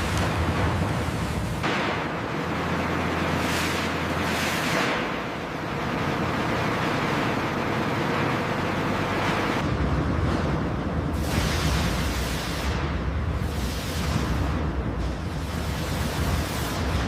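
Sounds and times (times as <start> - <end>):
sawmill machinery rushing noise: 0.0 - 9.6
low machinery hum: 0.0 - 17.0.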